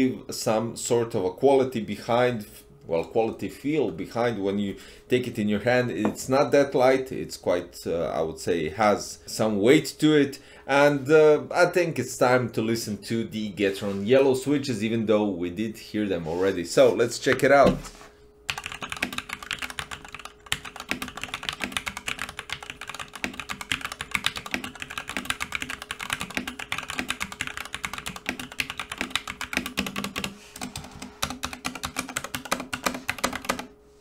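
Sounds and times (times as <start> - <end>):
fast typing on mechanical keyboard: 18.5 - 33.7.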